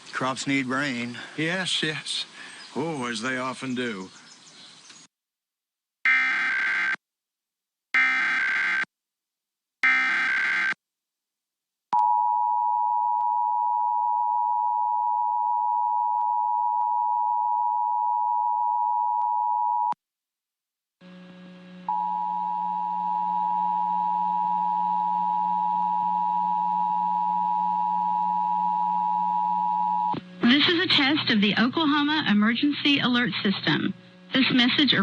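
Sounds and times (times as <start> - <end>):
low hum: 21.0 - 35.0.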